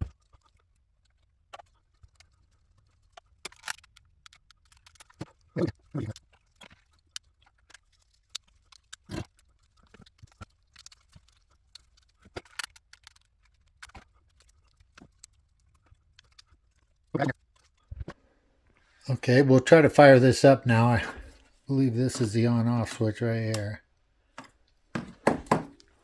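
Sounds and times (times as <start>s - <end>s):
clicks and taps of hand work: 24.4s - 25.9s.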